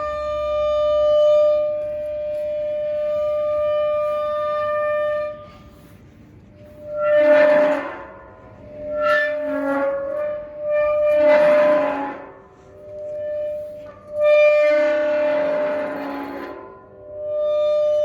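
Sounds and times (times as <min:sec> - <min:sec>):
rusty gate hinge creaking: 0:07.0 - 0:16.8.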